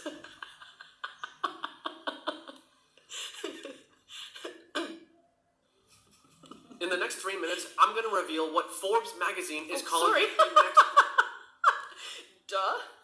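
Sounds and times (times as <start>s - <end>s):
woman laughing: 0.0s - 4.6s, 10.0s - 11.9s.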